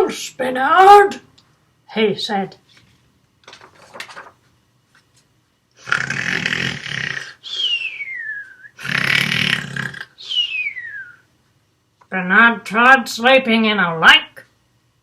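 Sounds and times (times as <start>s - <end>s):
cartoon rasping snore: 5.8s - 7.4s, 8.7s - 10.2s.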